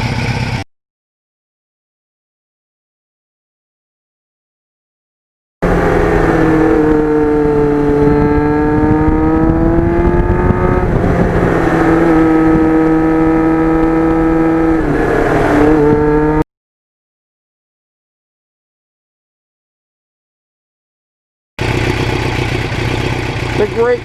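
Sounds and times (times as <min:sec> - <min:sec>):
motorcycle engine running: 0:05.6 - 0:16.4, 0:21.6 - 0:24.0.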